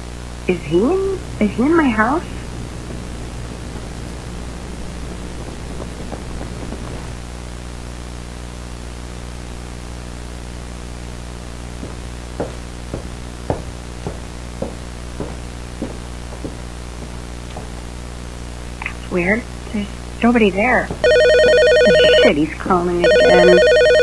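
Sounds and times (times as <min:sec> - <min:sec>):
steady hum and hiss: 0:00.0 - 0:23.8
footsteps walking: 0:11.4 - 0:22.3.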